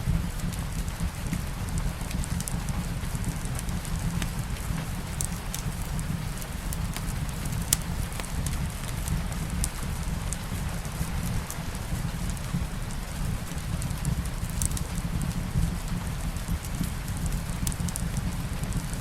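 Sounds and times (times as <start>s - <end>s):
light rain patter: 0.0s - 19.0s
wood fire crackling: 1.3s - 18.9s
sharp pops of fire: 1.7s - 8.9s, 14.1s - 14.9s, 17.2s - 18.3s.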